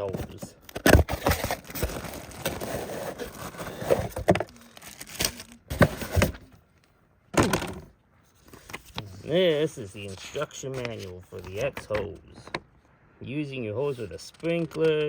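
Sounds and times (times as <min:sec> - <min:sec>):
packaging crinkling: 0:00.0 - 0:06.5.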